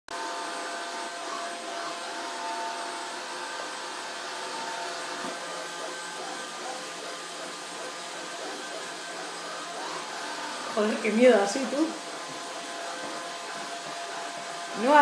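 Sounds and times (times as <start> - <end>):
vacuum cleaner running: 0.1 - 15.0.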